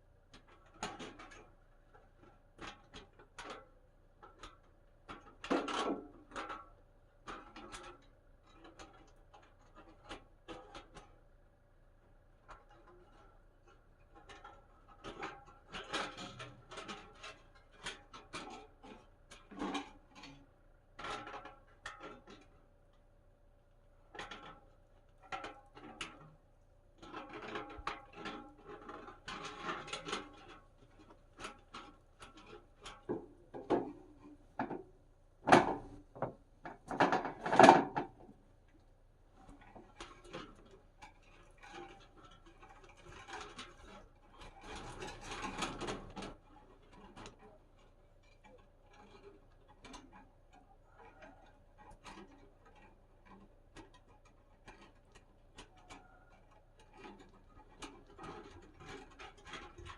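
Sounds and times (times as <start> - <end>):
metal flue pipe clanking: 27.0 - 38.8.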